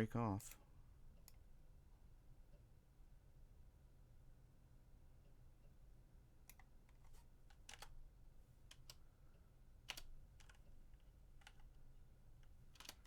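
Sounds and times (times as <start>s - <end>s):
low room hum: 0.0s - 13.0s
keyboard key presses: 12.4s - 13.0s.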